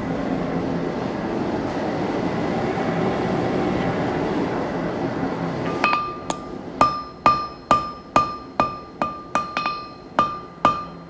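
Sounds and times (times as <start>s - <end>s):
hammer striking steel on anvil: 5.7s - 11.0s.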